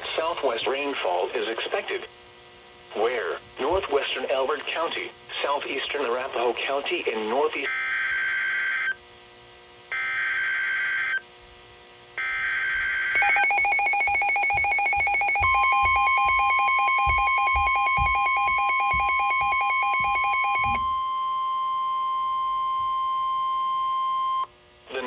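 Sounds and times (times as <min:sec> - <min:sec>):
steady warning alarm tone: 0:12.2 - 0:24.5
rapid pulsing alert beep: 0:13.2 - 0:21.2.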